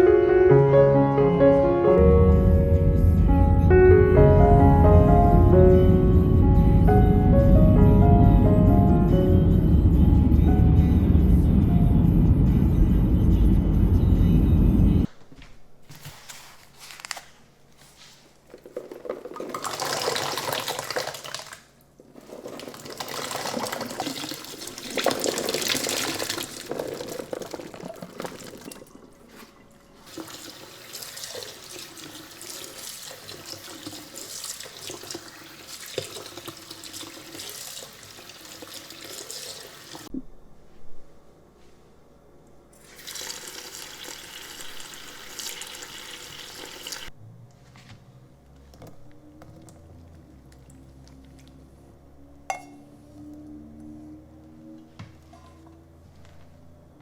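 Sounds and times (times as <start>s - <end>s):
loud low rumble: 2.0s - 15.1s
tap water running into sink: 18.7s - 28.9s, 30.0s - 40.1s, 42.8s - 47.1s.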